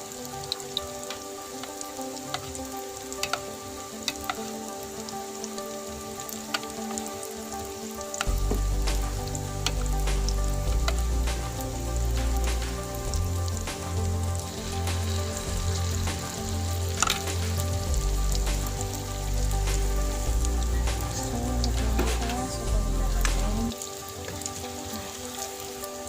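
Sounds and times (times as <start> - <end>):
eggs deep-frying in hot oil: 0.0 - 26.0
deeper steady sound: 8.3 - 23.7.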